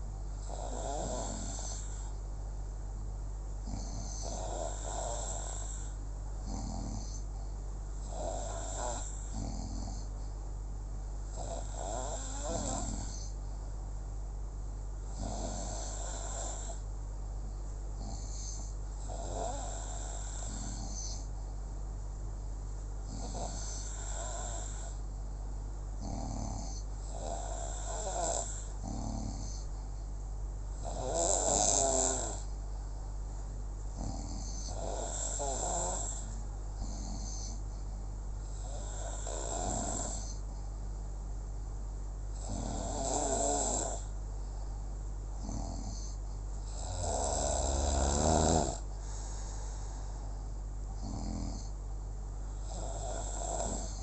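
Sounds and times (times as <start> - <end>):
steady low hum: 0.0 - 54.0
rasping snore: 0.4 - 2.1, 3.6 - 7.3, 8.1 - 10.1, 11.3 - 13.4, 15.1 - 16.8, 18.0 - 21.3, 23.1 - 25.0, 26.0 - 29.7, 30.8 - 32.5, 34.0 - 37.6, 38.5 - 40.4, 42.4 - 44.1, 45.4 - 49.4, 51.0 - 51.8, 52.6 - 54.0.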